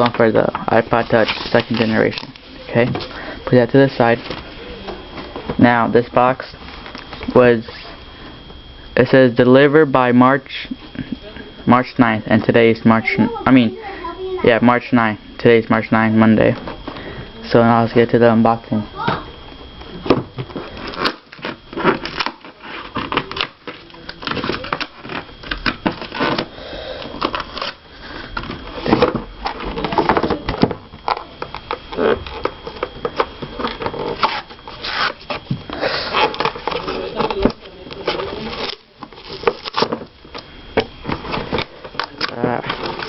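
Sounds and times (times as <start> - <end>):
cardboard box rustling and scraping: 31.9 - 40.0.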